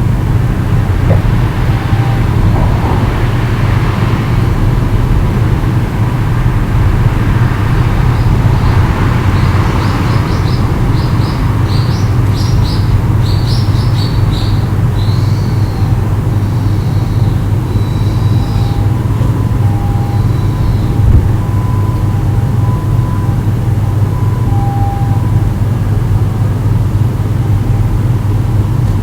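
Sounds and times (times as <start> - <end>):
steady low rumble: 0.0 - 29.0
small bird chirping: 8.0 - 21.1.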